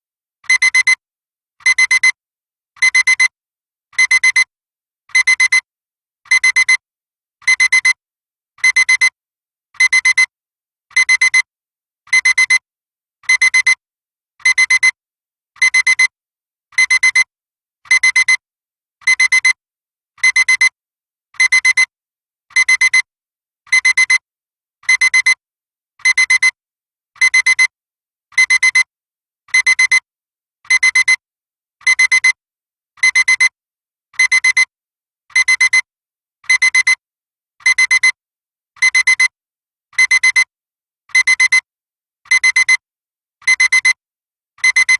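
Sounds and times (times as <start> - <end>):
digital alarm clock beeping: 30.7 - 31.2, 33.0 - 33.6, 34.2 - 34.7, 35.4 - 35.9, 36.5 - 37.0, 37.7 - 38.2, 38.8 - 39.3, 40.0 - 40.5, 41.1 - 41.7, 42.3 - 42.8, 43.5 - 44.0, 44.6 - 44.9.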